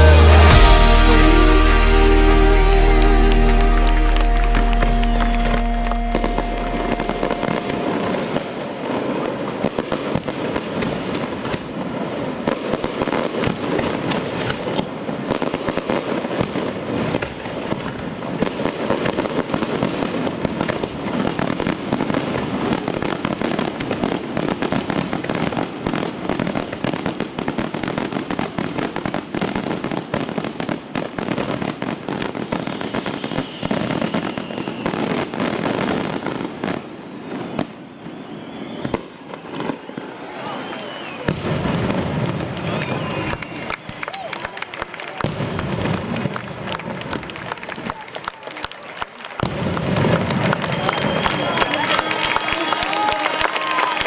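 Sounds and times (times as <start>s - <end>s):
music track: 0.0s - 8.3s
fireworks bangs and crackling: 0.0s - 54.0s.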